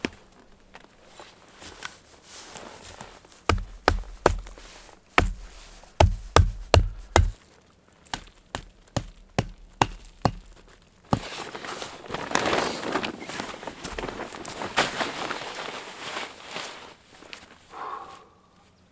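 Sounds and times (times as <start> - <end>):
rustling: 0.0 - 7.5, 8.1 - 17.6
heavy thuds: 3.5 - 7.4, 8.2 - 11.4.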